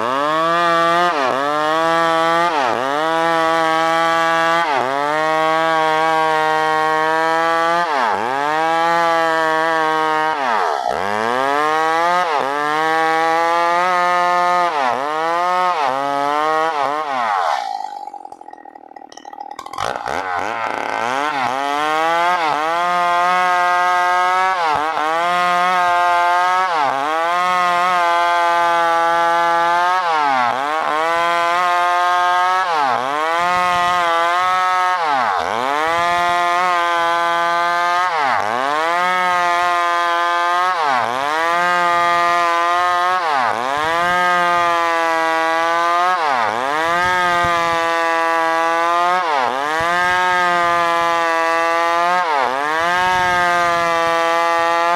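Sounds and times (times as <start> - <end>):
chainsaw sawing wood: 0.0 - 54.9.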